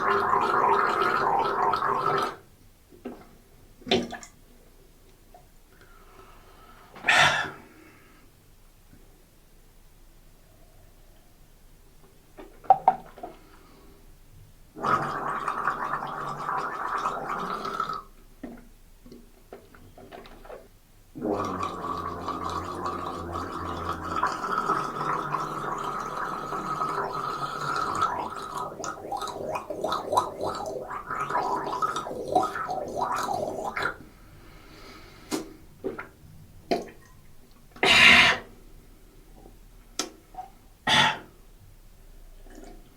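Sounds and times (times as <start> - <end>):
person gargling: 0.0 - 2.4, 14.8 - 18.1, 21.2 - 34.0, 40.9 - 41.3.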